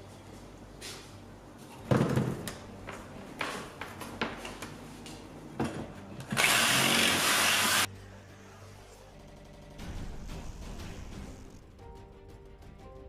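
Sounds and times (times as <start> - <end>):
power drill drilling: 6.3 - 7.9.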